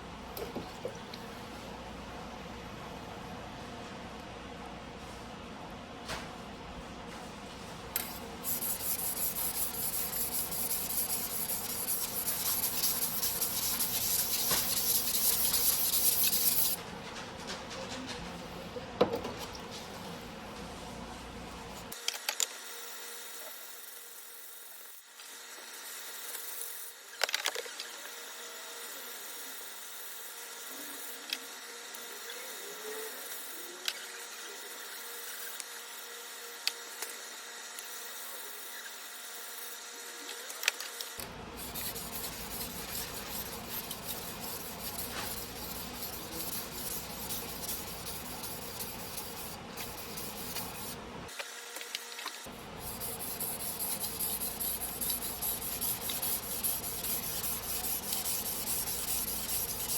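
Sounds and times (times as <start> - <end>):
blade scraping on whetstone: 8.0 - 16.8, 41.6 - 51.0, 52.8 - 59.9.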